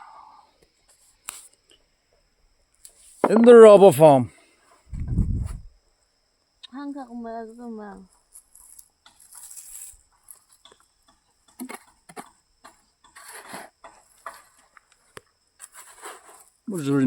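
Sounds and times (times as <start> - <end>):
rustling and scraping soil: 2.8 - 3.3, 8.1 - 17.0.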